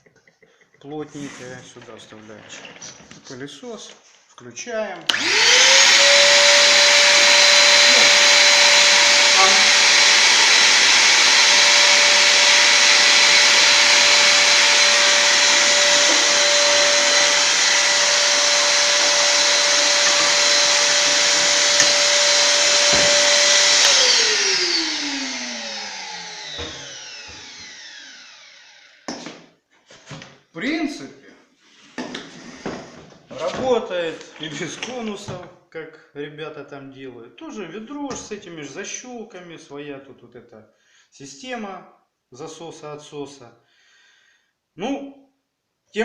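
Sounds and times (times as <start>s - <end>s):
vacuum cleaner whining: 5.1s - 29.5s.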